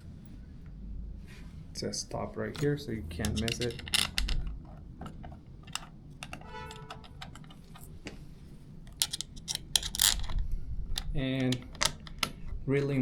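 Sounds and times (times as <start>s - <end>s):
metal lock hardware clicking: 2.5s - 8.0s, 8.9s - 12.6s.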